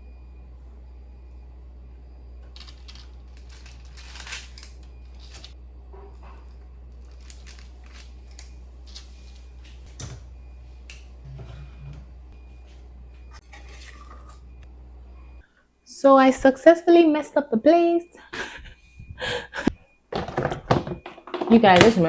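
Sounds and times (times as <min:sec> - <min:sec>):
low hum: 0:00.0 - 0:15.5, 0:18.2 - 0:19.9
kitchen utensils and bowls clattering: 0:13.5 - 0:14.4, 0:20.2 - 0:22.0.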